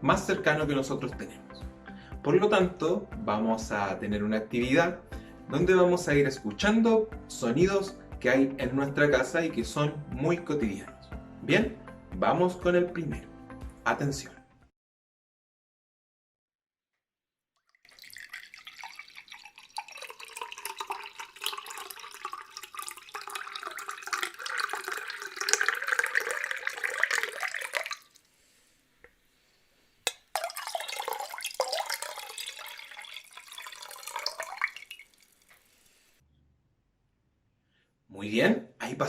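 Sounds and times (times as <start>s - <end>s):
water pouring into a glass: 17.6s - 28.3s, 30.1s - 36.2s.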